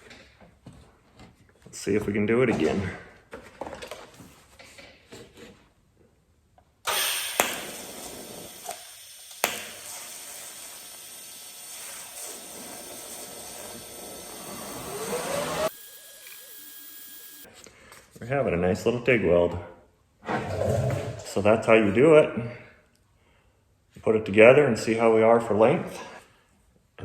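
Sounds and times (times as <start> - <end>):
welding arc hissing: 6.9 - 17.5.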